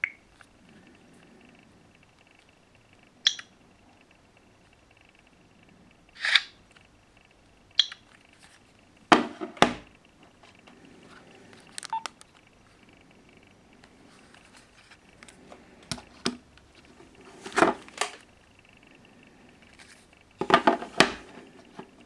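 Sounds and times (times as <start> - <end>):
sharp clicks: 0.0 - 9.1, 11.5 - 17.0.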